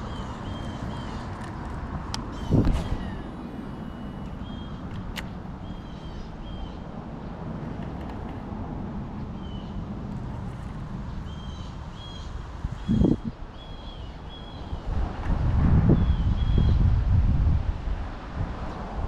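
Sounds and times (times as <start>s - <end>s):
wind rumble on microphone: 0.0s - 19.0s
bird high chirp: 2.3s - 4.8s, 5.6s - 6.8s.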